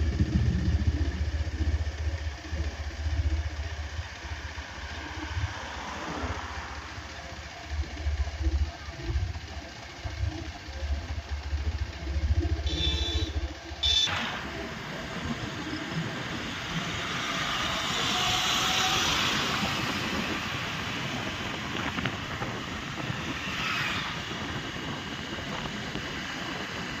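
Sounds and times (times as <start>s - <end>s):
road traffic rumble: 0.0s - 27.0s
vehicle passing by: 4.6s - 7.5s.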